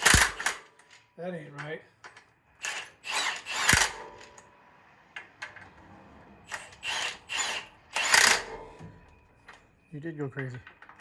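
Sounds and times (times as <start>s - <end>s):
tool scraping metal: 6.5s - 8.8s.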